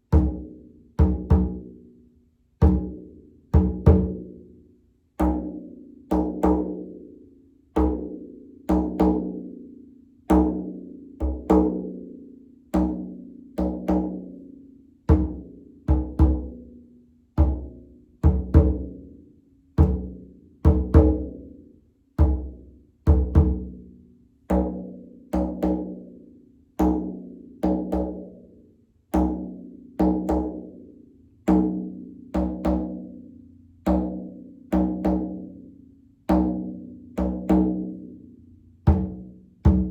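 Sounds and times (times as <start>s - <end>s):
frame drum beat: 0.0s - 1.8s, 2.6s - 4.4s, 15.1s - 16.6s, 17.4s - 19.0s, 19.8s - 21.4s, 22.2s - 23.8s, 38.9s - 39.9s.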